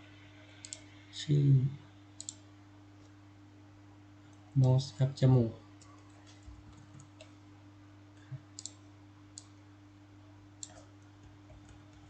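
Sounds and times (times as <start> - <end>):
low electrical hum: 0.0 - 12.0
computer mouse clicks: 0.5 - 0.9, 2.2 - 2.4, 8.6 - 8.8, 10.6 - 12.0.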